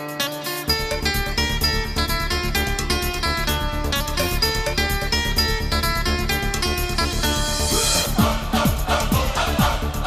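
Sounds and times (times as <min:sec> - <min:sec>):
plucked guitar notes: 0:00.0 - 0:07.7
steady pulsing beat: 0:00.0 - 0:10.0.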